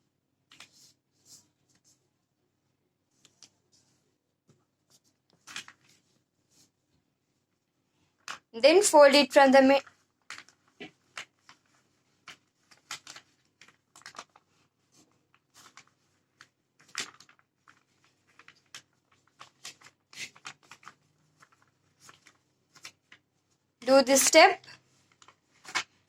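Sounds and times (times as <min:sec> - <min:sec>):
paper rustling and crinkling: 0:03.1 - 0:06.8, 0:09.8 - 0:23.8, 0:24.6 - 0:26.0.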